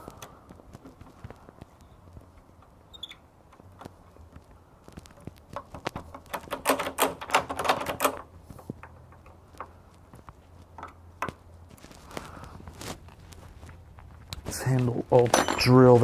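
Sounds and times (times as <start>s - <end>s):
door handle clicking and rattling: 5.6s - 9.3s.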